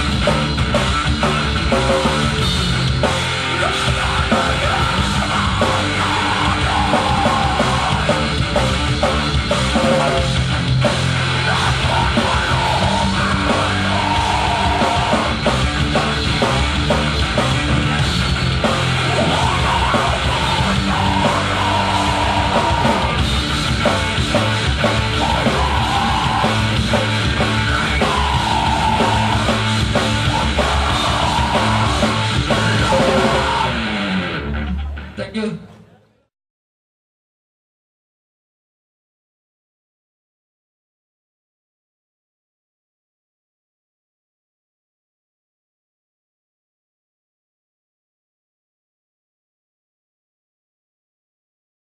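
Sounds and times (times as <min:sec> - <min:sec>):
heavy metal band playing live: 0:00.0 - 0:35.6
shouted vocals: 0:03.4 - 0:08.6, 0:11.2 - 0:15.6, 0:18.8 - 0:23.3, 0:24.7 - 0:34.0.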